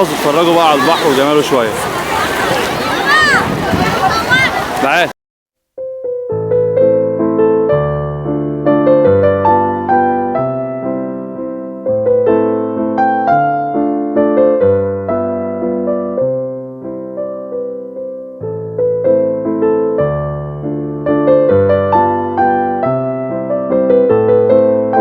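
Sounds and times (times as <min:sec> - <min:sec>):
gentle piano melody: 0:05.8 - 0:25.0.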